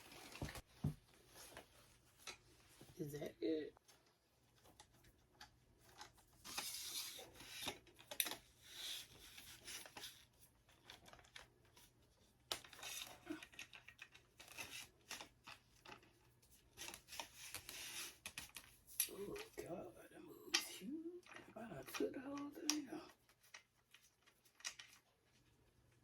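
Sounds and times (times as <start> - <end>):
plastic packaging rustling: 0.0 - 3.1.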